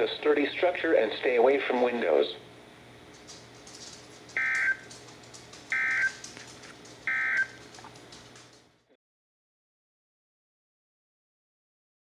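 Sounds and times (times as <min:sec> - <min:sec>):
faint radio static: 0:00.0 - 0:02.9
digital data tone bursts: 0:04.4 - 0:04.8, 0:05.8 - 0:06.2.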